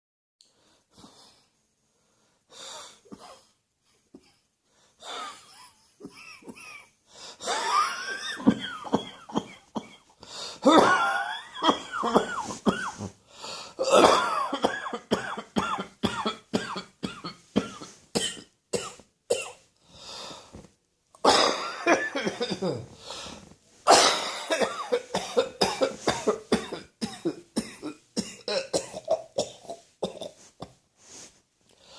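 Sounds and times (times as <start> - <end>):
person coughing: 5.1 - 13.2, 13.8 - 19.6, 21.2 - 22.9, 23.9 - 30.5.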